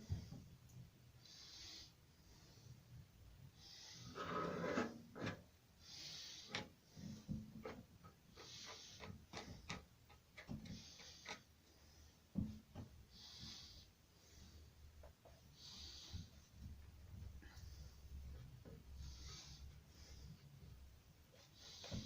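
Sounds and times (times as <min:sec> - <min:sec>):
clicks taps and scrapes of hand work: 0:06.5 - 0:11.7.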